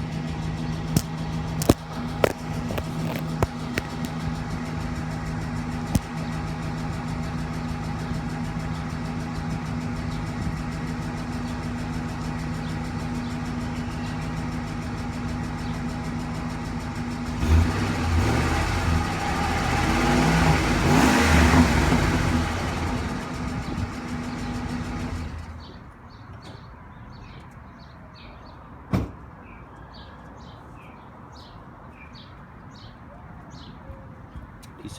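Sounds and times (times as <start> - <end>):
engine idling and revving: 0.0 - 25.8.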